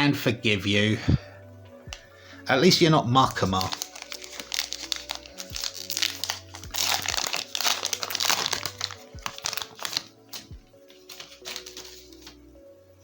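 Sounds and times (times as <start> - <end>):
background music: 0.0 - 13.0
plastic crinkling and rustling: 3.2 - 12.4.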